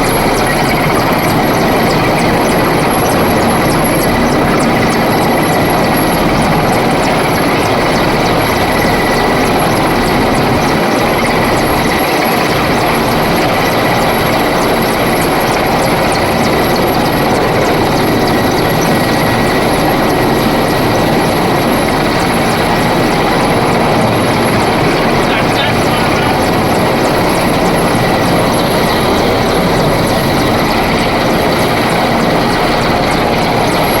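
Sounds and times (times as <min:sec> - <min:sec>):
helicopter rotor and engine: 0:00.0 - 0:34.0.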